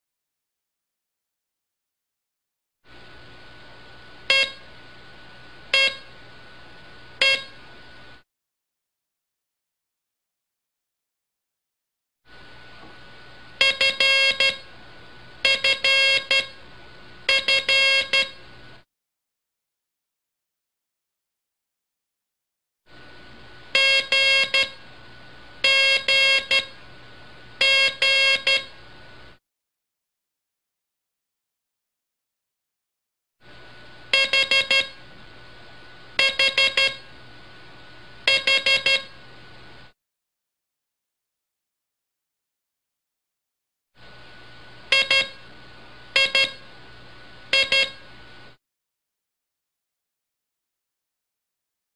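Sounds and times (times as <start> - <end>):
morse code buzzy tone: 4.2 - 4.7, 5.7 - 6.1, 7.2 - 7.6, 13.6 - 14.7, 15.4 - 16.6, 17.2 - 18.4, 23.7 - 24.8, 25.6 - 26.8, 27.6 - 28.8, 34.1 - 35.0, 36.2 - 37.1, 38.2 - 39.2, 44.9 - 45.4, 46.1 - 46.7, 47.5 - 48.1.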